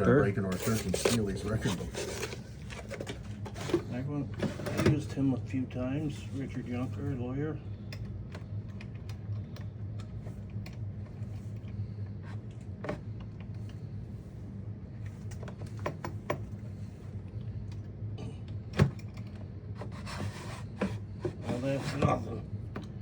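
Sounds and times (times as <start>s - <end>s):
steady low hum: 0.0s - 23.0s
papers rustling: 0.4s - 4.0s.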